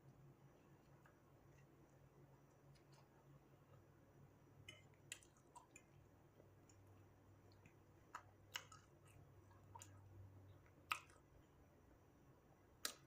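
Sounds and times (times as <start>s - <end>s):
faint chewing: 0.6s - 3.9s, 4.6s - 11.6s, 12.8s - 13.0s
soft mouth clicks: 10.8s - 11.2s, 12.8s - 13.0s.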